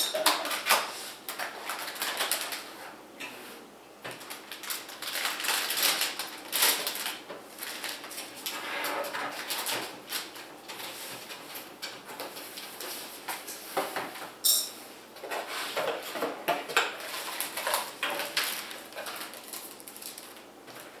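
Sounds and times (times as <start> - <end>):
packaging rustling: 1.3 - 2.8, 4.1 - 13.5, 15.7 - 21.0.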